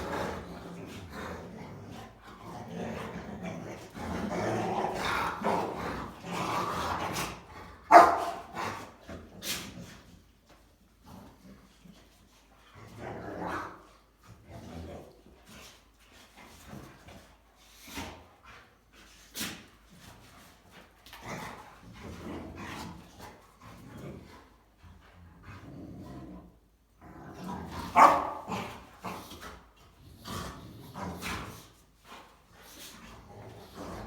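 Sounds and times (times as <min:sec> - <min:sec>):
dogs barking: 0:07.9 - 0:08.6, 0:28.0 - 0:28.5.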